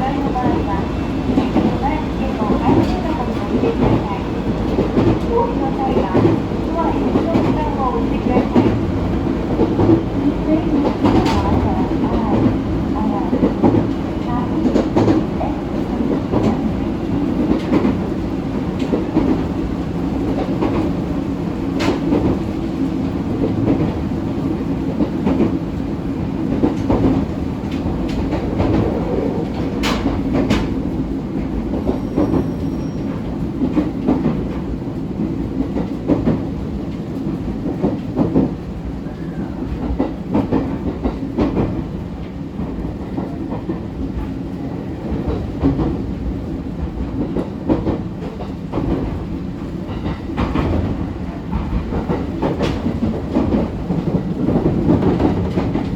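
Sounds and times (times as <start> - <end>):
rail joint clicks: 0.0 - 55.9
train wheels rumbling on rail: 0.0 - 55.9.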